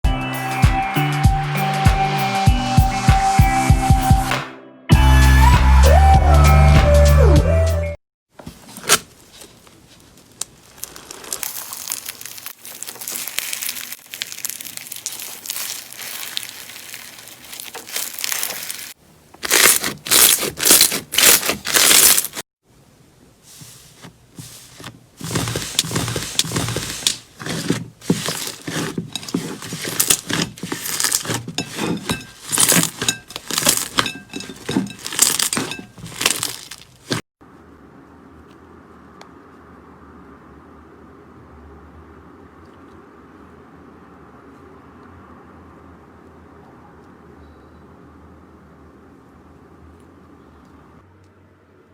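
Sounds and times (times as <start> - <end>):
slime crackling and popping: 10.2 - 22.4.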